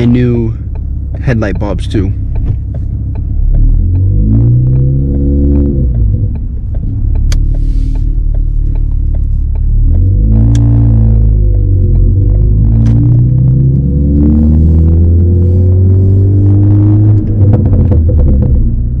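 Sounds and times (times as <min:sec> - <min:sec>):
car engine revving hard: 0:03.5 - 0:06.0, 0:09.8 - 0:18.4.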